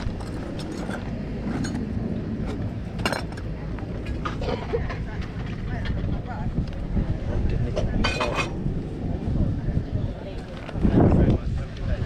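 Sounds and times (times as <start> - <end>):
small metal objects clinking: 0.0 - 1.9, 2.5 - 3.4
low outdoor rumble: 0.0 - 12.0.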